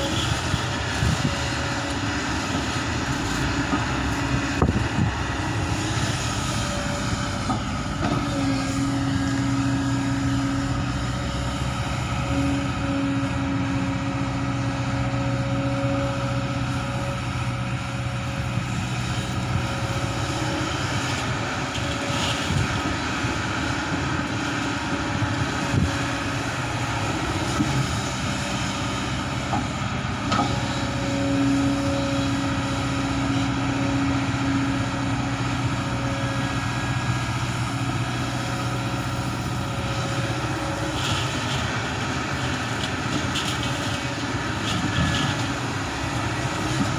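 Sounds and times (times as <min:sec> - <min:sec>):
excavator diesel engine running: 0:00.0 - 0:46.9.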